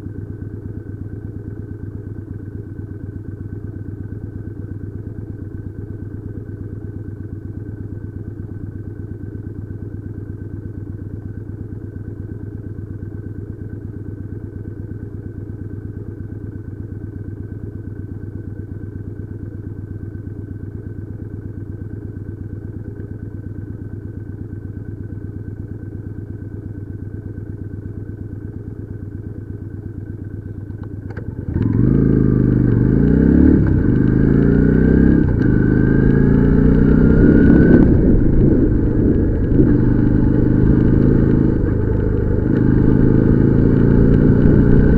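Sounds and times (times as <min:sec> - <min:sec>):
motorcycle engine idling and revving: 0:00.0 - 0:44.9.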